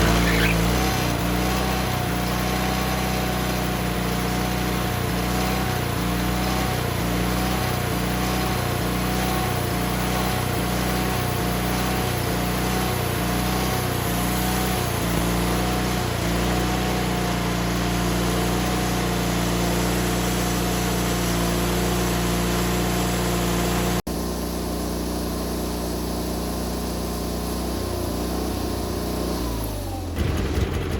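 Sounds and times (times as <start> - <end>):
band sawmill engine running: 0.0 - 30.9.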